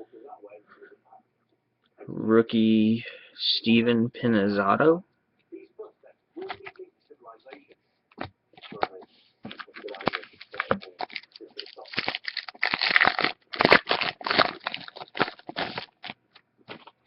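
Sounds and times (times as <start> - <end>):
wrapper crinkling: 9.5 - 17.0.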